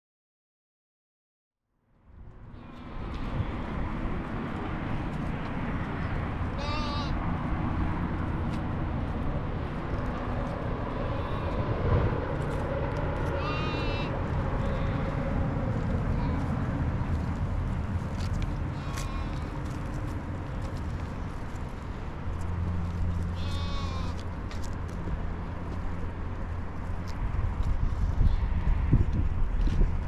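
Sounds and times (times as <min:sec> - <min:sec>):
outdoor background rush: 0:02.0 - 0:30.0
goat bleating: 0:06.5 - 0:07.2, 0:11.2 - 0:11.6, 0:13.3 - 0:15.2, 0:16.1 - 0:16.6, 0:18.7 - 0:19.5, 0:23.3 - 0:24.2.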